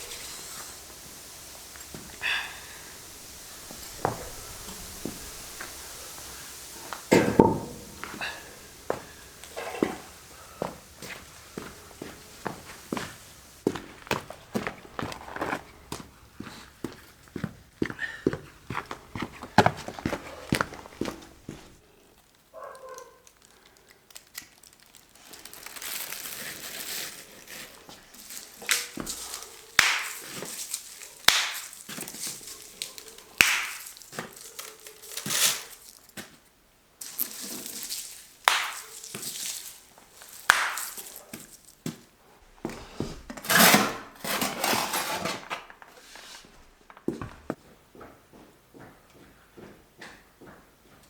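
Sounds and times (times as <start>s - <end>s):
crunching strokes in snow: 0.0s - 7.2s, 7.8s - 21.8s, 25.3s - 36.1s.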